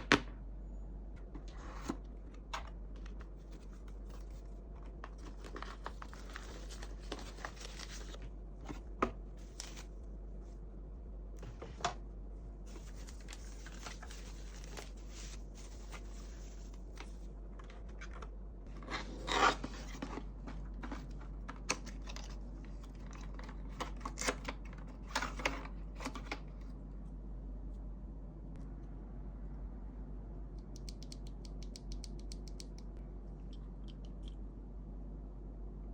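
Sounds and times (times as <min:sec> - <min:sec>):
steady low hum: 0:00.0 - 0:35.9
packaging rustling: 0:05.1 - 0:08.2, 0:12.7 - 0:16.9.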